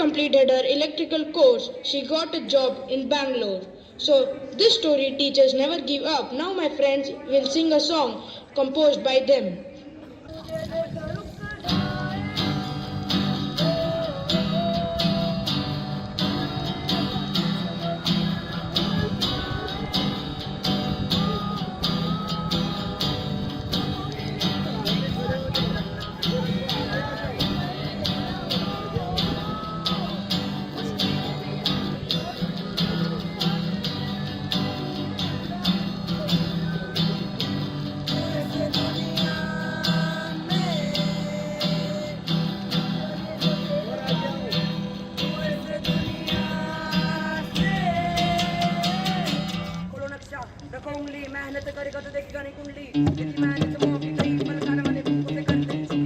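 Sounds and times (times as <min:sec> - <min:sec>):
person singing: 0:10.3 - 0:49.9, 0:52.9 - 0:56.0
strummed acoustic guitar: 0:10.3 - 0:50.0, 0:52.8 - 0:56.0.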